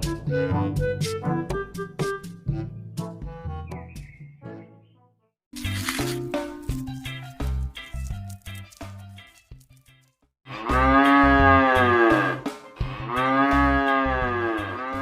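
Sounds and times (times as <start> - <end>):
light background music: 0.0 - 15.0
cow mooing: 10.6 - 15.0.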